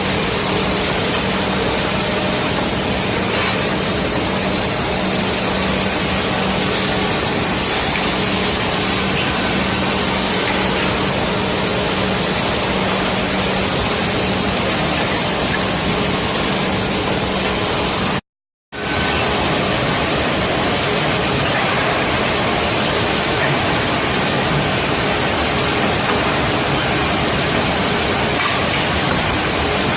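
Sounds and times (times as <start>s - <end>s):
woodworking machine running: 18.8s - 29.9s.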